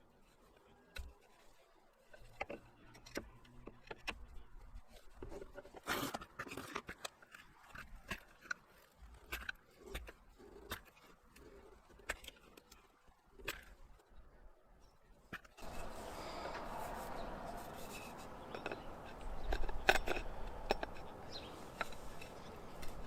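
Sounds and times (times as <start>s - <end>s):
blade scraping wood: 4.8s - 12.6s, 15.5s - 23.0s.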